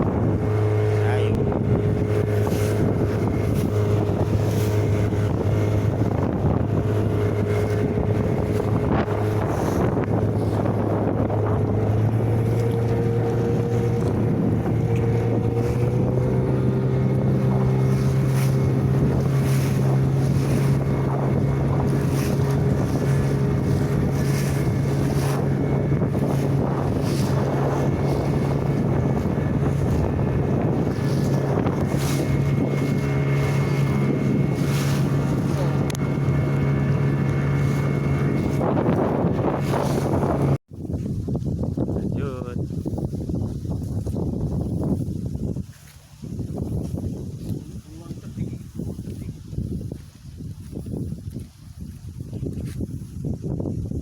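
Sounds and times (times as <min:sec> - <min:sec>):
engine running steadily: 0:00.0 - 0:40.6
wind noise on microphone: 0:00.0 - 0:54.0.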